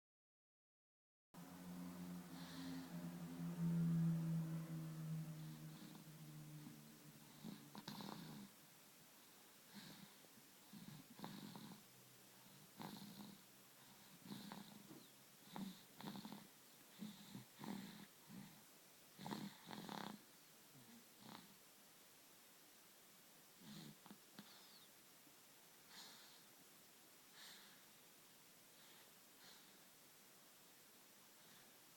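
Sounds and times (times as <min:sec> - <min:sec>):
faint low hum: 0:01.4 - 0:31.9
baby snoring faintly: 0:01.5 - 0:08.6, 0:09.2 - 0:21.6, 0:23.5 - 0:25.0, 0:25.8 - 0:26.6, 0:28.7 - 0:30.0.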